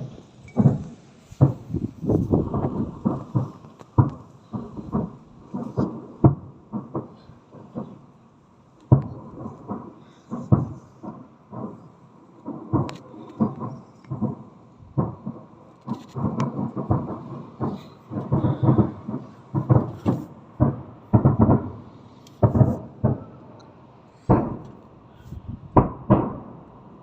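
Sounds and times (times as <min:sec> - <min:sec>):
fireworks deep bangs: 0:00.0 - 0:27.0.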